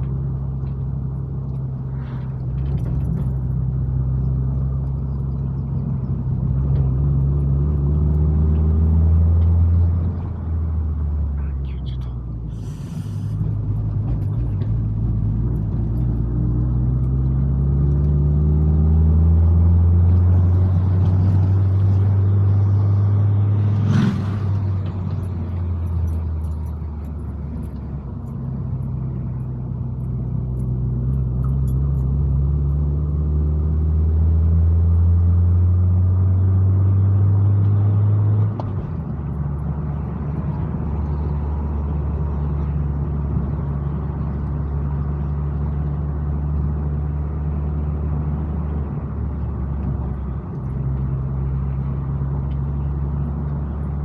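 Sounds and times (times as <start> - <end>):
car engine pulling uphill: 0.0 - 54.0.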